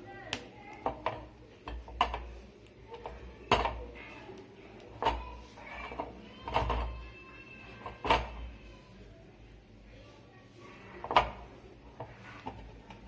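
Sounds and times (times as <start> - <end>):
kitchen utensils knocking: 2.9 - 4.0.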